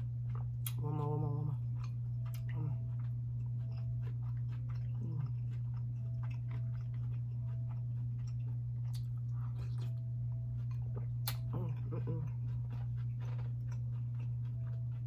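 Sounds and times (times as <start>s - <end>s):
low electrical hum: 0.0s - 15.0s
person chewing food: 0.0s - 15.0s.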